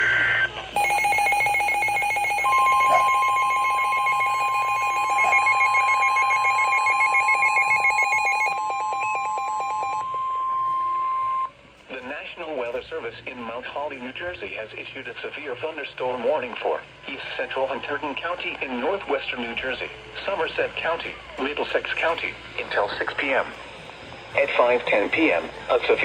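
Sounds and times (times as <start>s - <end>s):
rapid pulsing alarm beeps: 0.0s - 11.5s
steady high tone: 0.0s - 11.6s.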